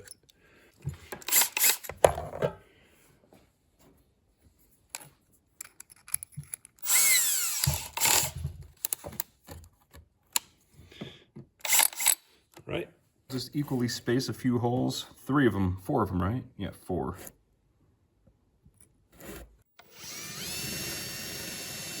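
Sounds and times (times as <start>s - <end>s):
tools clattering: 1.0s - 2.6s
power drill running: 1.2s - 1.9s, 6.8s - 8.5s, 11.6s - 12.2s, 19.2s - 22.0s.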